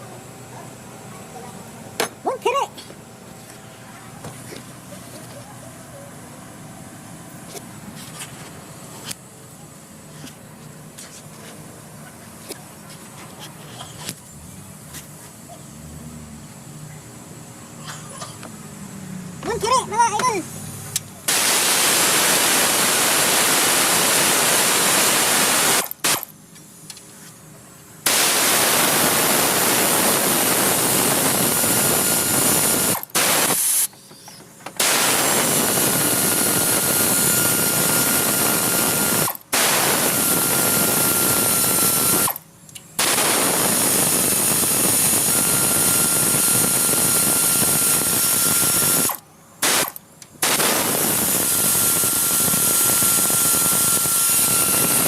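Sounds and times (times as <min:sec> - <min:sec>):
pneumatic air tool running: 0:19.6 - 0:27.1, 0:28.0 - 0:42.4, 0:43.0 - 0:55.0.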